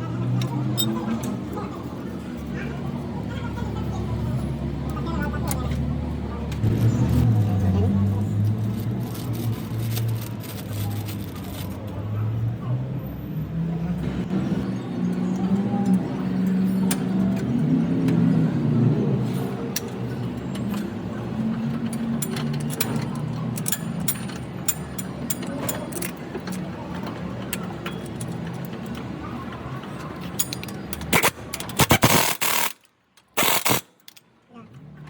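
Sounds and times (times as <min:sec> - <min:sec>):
loud bursts: 0:31.2 - 0:32.8.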